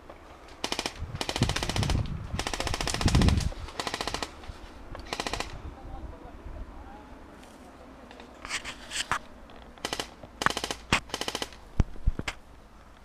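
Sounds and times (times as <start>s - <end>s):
airsoft guns firing bursts: 0.6s - 4.4s, 5.0s - 5.6s, 9.8s - 11.6s.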